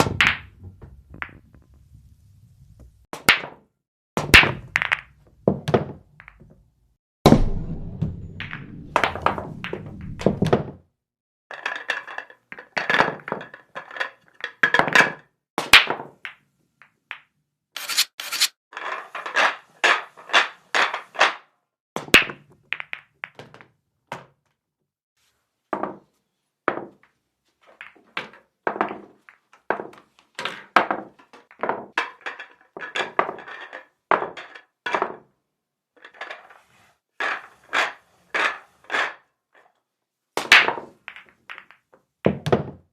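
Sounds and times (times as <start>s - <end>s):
billiard balls clacking: 0.0s - 1.9s, 4.3s - 6.6s, 8.4s - 10.8s, 22.0s - 23.8s, 40.4s - 42.7s
low rumble: 7.3s - 10.6s.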